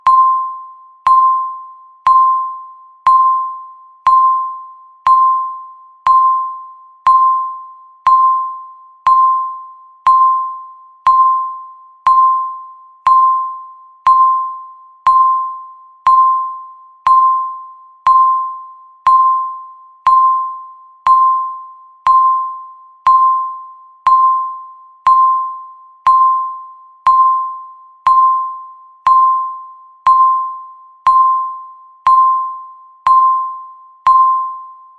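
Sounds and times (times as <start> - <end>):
timer bell-like ticking pings: 0.0 - 34.9.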